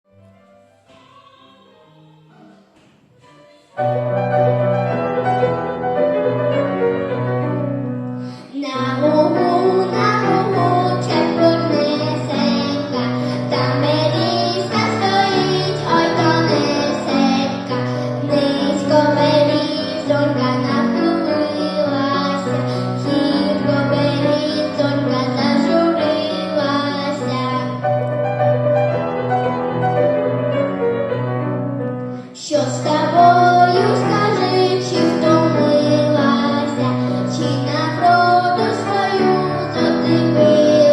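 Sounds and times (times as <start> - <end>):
instrumental accompaniment: 0.1 - 8.4
girl singing a folk song: 0.9 - 2.4, 8.3 - 27.8, 32.2 - 40.9.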